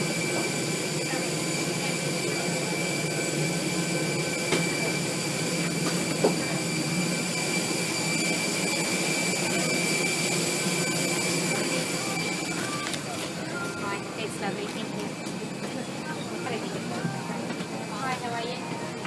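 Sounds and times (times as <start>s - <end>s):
ventilation hum and whine: 0.0s - 19.0s.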